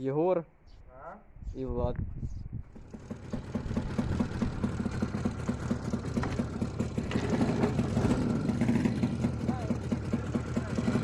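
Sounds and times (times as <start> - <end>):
engine ringing and knocking: 2.7 - 11.0
two-stroke motorcycle engine running: 2.7 - 11.0.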